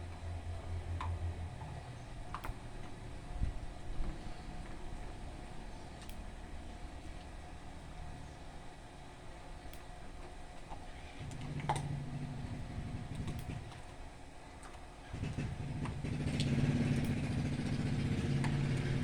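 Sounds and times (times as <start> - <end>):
engine humming: 0.0 - 19.0
sharp clicks: 2.3 - 3.0.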